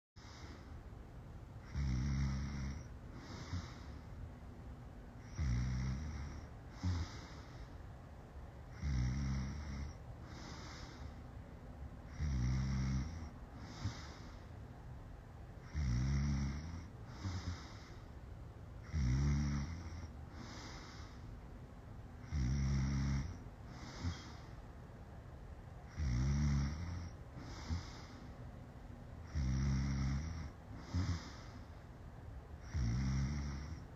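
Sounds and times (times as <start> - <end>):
person snoring: 1.6 - 3.9, 5.2 - 7.6, 8.7 - 11.1, 12.1 - 14.4, 15.6 - 18.0, 18.8 - 21.2, 22.2 - 24.5, 25.9 - 28.2, 29.2 - 31.7, 32.6 - 33.9
soft breath out: 3.1 - 4.2, 6.7 - 7.9, 10.2 - 11.3, 13.6 - 14.6, 17.1 - 18.2, 20.3 - 21.4, 23.7 - 24.7, 27.4 - 28.5, 30.7 - 31.9.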